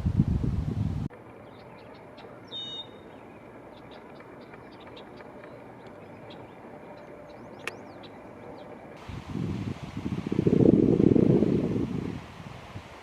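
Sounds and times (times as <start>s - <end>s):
low rumble of wind: 0.0s - 13.0s
small birds chirping: 1.3s - 9.1s
short whistled call: 2.5s - 3.0s.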